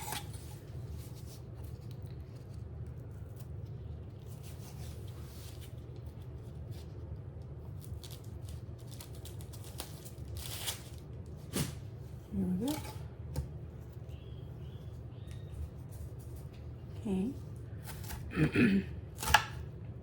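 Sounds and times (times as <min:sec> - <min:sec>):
knife cutting onion on board: 0:17.8 - 0:18.4, 0:19.1 - 0:19.6.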